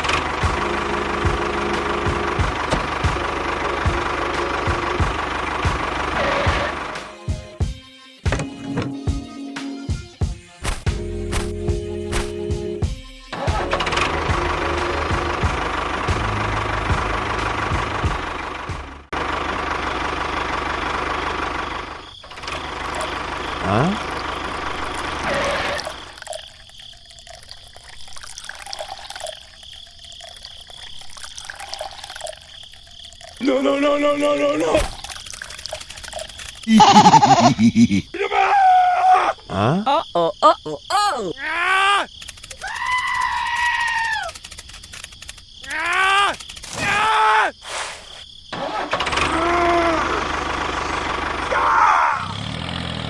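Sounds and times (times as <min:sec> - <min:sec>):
small engine running: 0:00.0 - 0:07.1, 0:13.6 - 0:26.2, 0:35.4 - 0:37.1, 0:44.3 - 0:45.4, 0:48.6 - 0:53.0
small water splashes: 0:24.8 - 0:36.7
water trickling and dripping: 0:25.8 - 0:36.7.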